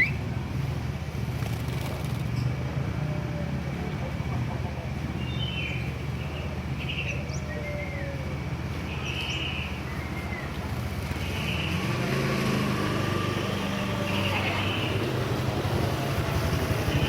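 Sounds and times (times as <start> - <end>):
bulbul bright calls: 0.0 - 0.3
engine droning: 0.0 - 17.0.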